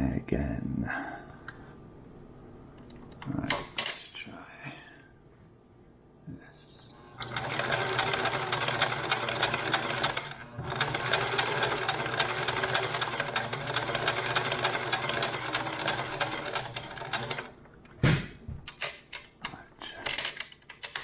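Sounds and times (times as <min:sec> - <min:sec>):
sewing machine stitching: 0:07.2 - 0:17.5.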